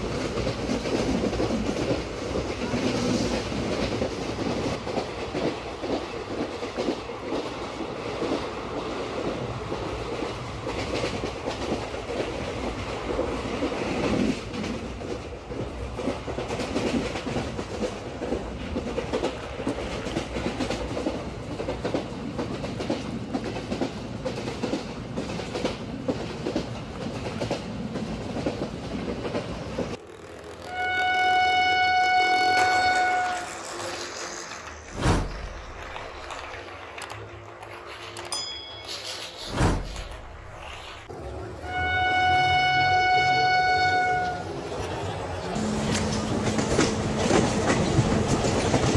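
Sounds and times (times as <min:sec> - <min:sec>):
train wheels clicking over rails: 0:00.0 - 0:30.6, 0:32.2 - 0:38.3, 0:44.7 - 0:48.9
train horn blast: 0:30.6 - 0:33.8, 0:41.6 - 0:44.5.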